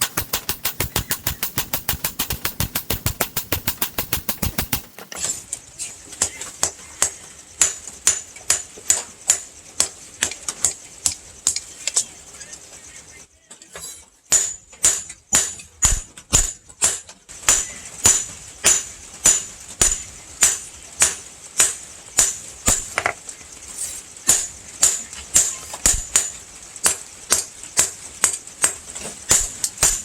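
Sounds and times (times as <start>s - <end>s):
hammer striking steel on anvil: 0.0s - 5.2s, 7.0s - 9.5s, 13.8s - 23.2s, 24.2s - 30.0s.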